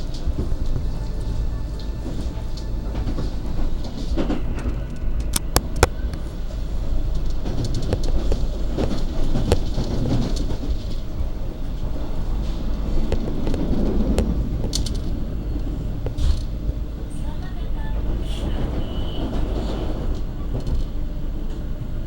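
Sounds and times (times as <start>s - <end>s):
train wheels rumbling on rails: 0.0s - 22.0s
wheels clicking over track joints: 6.8s - 21.0s.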